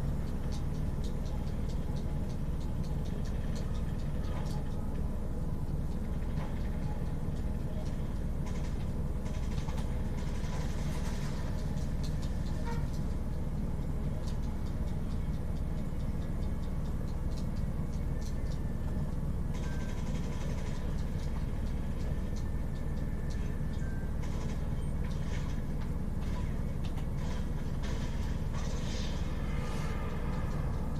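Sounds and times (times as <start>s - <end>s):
low machine hum: 0.0s - 30.9s
faint light ticks: 14.1s - 19.2s.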